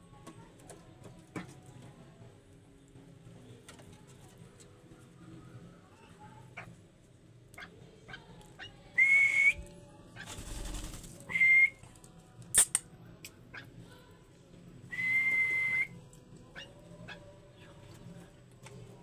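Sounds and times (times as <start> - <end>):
whistled bird calls: 9.0 - 9.7, 11.3 - 11.8, 14.9 - 15.9
sharp click: 12.6 - 12.8.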